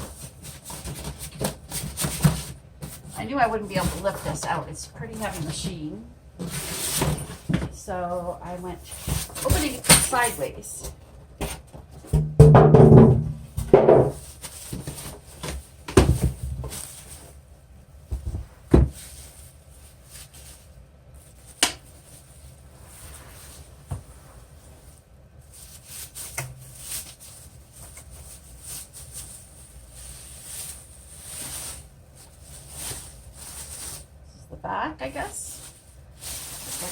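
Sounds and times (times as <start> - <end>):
cardboard rustling and scraping: 0.0 - 12.2, 13.5 - 17.4, 18.0 - 34.2, 35.2 - 36.9
knocks and thumps on cardboard: 11.4 - 16.7, 18.1 - 19.0.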